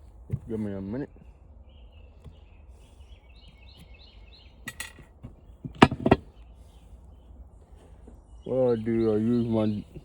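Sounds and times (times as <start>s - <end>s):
birds chirping faintly: 0.0s - 10.0s
hard objects knocking and clinking: 5.7s - 6.2s.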